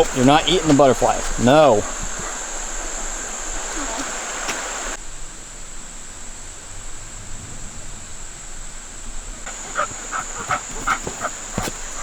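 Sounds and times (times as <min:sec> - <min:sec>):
waterfall and stream rushing: 0:00.0 - 0:05.0.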